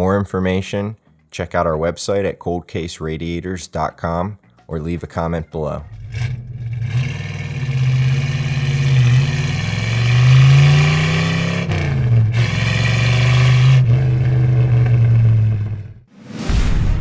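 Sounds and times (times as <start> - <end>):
car engine revving: 5.9 - 16.1.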